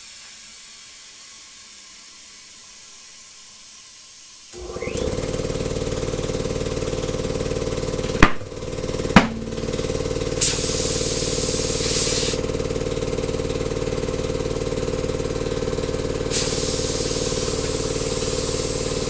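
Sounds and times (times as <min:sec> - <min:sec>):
air compressor running: 0:04.5 - 0:19.0
compressed air hissing into tire: 0:09.6 - 0:12.5, 0:16.2 - 0:19.0.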